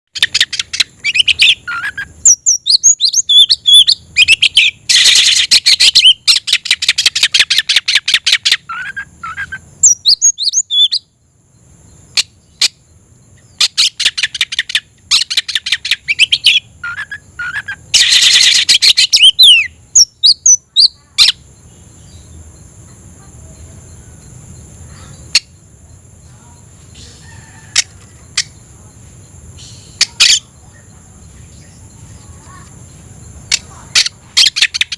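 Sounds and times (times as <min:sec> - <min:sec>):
bird whistling and trilling: 0:00.2 - 0:11.1, 0:13.5 - 0:21.4, 0:34.0 - 0:34.9.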